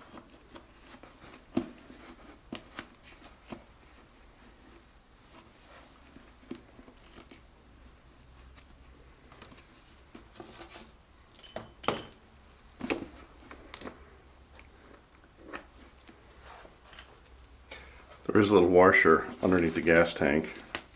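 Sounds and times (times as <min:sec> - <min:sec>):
metal tools clinking: 0:11.3 - 0:12.3.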